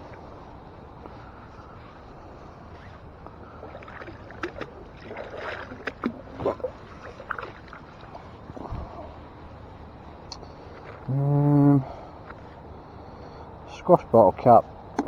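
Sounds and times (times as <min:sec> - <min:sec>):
short splashes in water: 0:02.8 - 0:09.0.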